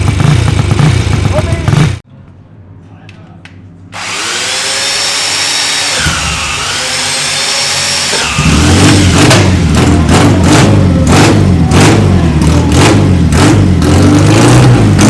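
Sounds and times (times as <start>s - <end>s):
motorcycle engine running: 0.0s - 2.0s, 8.2s - 15.0s
starter motor cranking: 4.0s - 10.0s.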